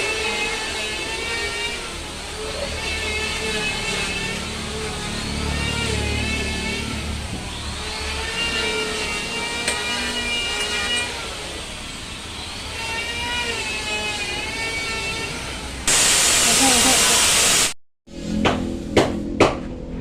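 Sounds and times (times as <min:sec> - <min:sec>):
power tool whining: 0:00.0 - 0:17.8
loud steady hiss: 0:15.8 - 0:17.8.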